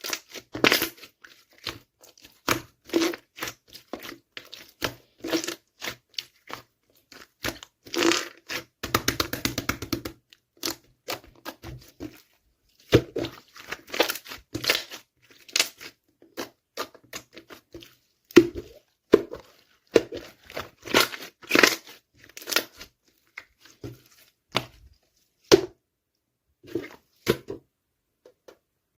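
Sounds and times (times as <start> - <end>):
slime popping and crackling: 0.0 - 6.6, 12.9 - 23.0.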